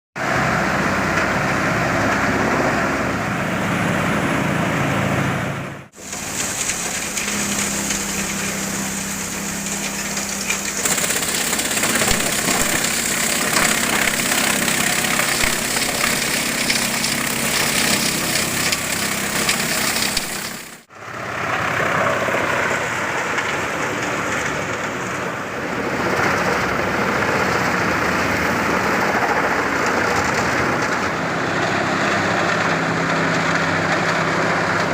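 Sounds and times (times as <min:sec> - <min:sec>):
heavy engine running: 0:00.2 - 0:34.9
wood being chipped: 0:06.0 - 0:20.9.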